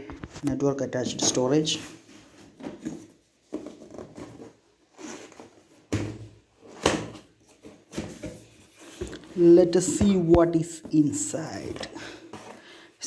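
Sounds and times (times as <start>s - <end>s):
cardboard rustling: 0.2s - 13.0s
cardboard knocks and scrapes: 1.1s - 10.4s.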